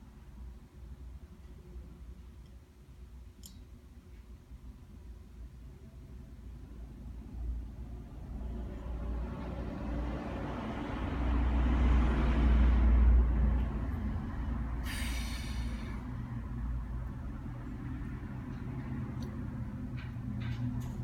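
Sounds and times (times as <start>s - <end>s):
vehicle passing by: 8.0s - 21.0s.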